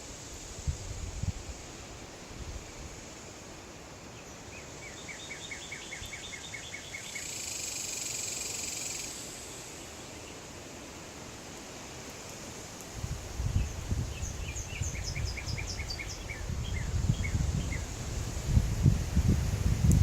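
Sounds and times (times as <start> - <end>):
high buzzing hiss: 0.0 - 20.0
steady breeze: 0.0 - 20.0
songbird whistling notes: 14.1 - 17.8.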